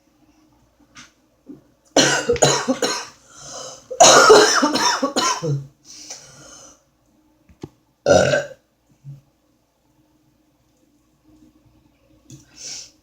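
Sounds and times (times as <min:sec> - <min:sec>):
woman coughing: 0:02.0 - 0:03.2, 0:04.0 - 0:05.7.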